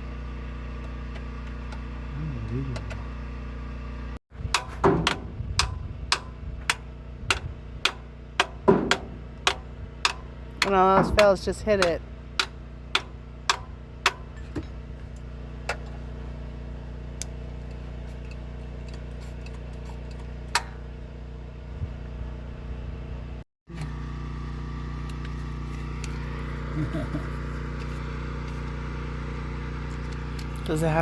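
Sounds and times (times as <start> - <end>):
engine hum: 0.0 - 31.0.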